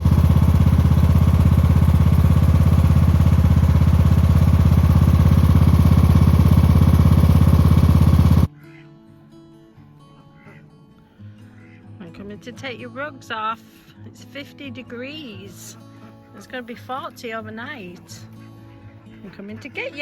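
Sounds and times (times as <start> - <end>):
engine idling: 0.0 - 8.5.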